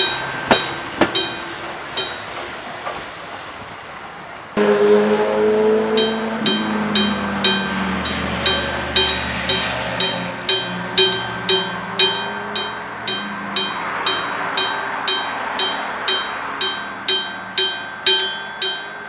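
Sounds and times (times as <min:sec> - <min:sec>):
level crossing bell ringing: 0:00.0 - 0:02.6, 0:04.6 - 0:19.0
sustained low tone: 0:04.6 - 0:19.0.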